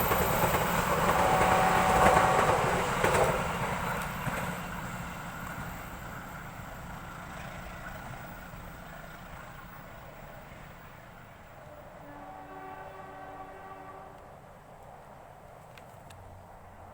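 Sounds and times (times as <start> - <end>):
train rumble: 0.0 - 16.9
locomotive air horn: 1.1 - 2.8, 11.6 - 14.4.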